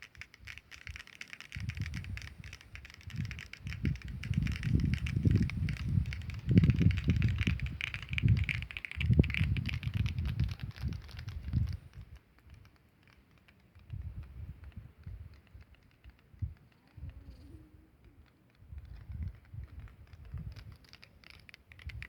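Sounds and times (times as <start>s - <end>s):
termites head-drumming ticking: 0.0s - 22.0s.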